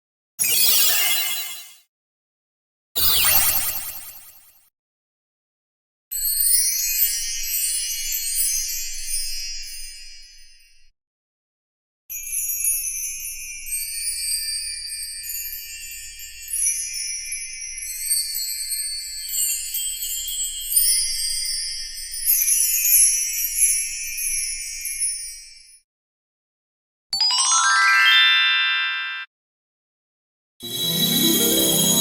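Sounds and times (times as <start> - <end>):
twinkling bell chimes: 27.2 - 29.3, 30.6 - 32.0.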